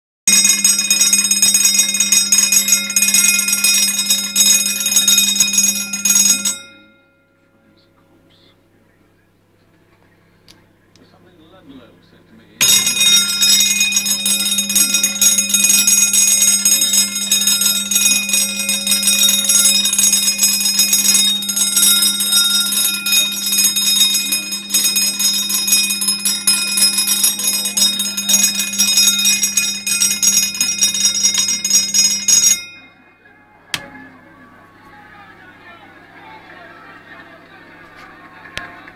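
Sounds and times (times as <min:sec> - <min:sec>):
bell ringing rapidly: 0:00.3 - 0:07.4, 0:12.6 - 0:33.1.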